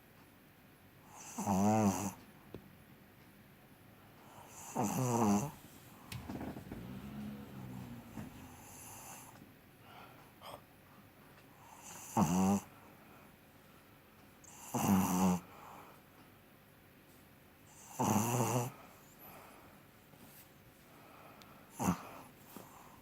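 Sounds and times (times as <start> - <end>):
dog snoring: 1.1 - 2.2, 4.2 - 9.4, 11.6 - 12.7, 14.4 - 15.6, 17.7 - 18.9, 21.7 - 23.0
dog breathing: 20.9 - 23.0.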